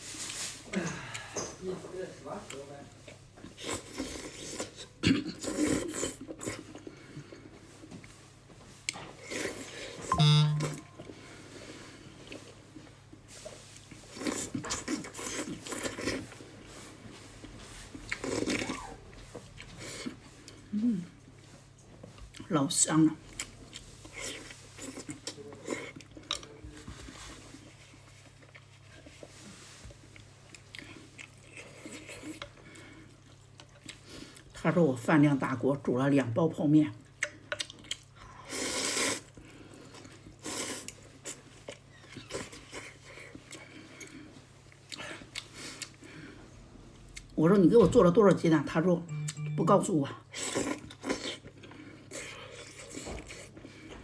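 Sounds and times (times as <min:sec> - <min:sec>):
slurping and chewing: 0:02.4 - 0:07.7, 0:13.7 - 0:16.9, 0:17.8 - 0:20.7, 0:23.3 - 0:34.5, 0:37.2 - 0:46.2, 0:50.3 - 0:54.0
short pitched sound: 0:10.1 - 0:11.0, 0:49.1 - 0:49.8
chewing and mouth sounds: 0:27.6 - 0:34.5, 0:37.0 - 0:46.1.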